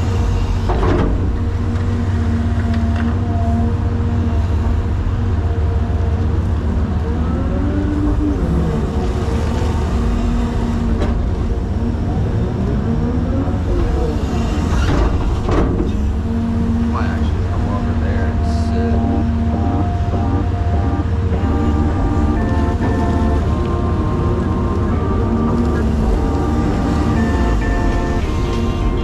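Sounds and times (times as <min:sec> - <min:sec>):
excavator diesel engine: 0:00.0 - 0:29.0
hydraulic whine: 0:00.0 - 0:29.0.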